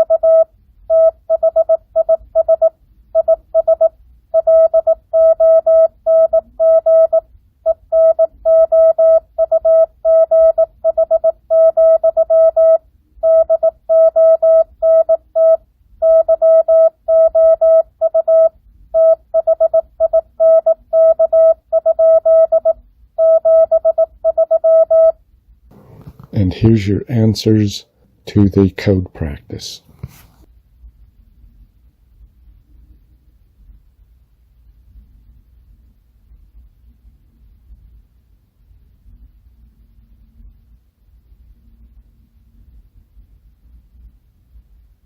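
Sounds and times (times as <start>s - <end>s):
morse code beeps: 0.0s - 25.2s.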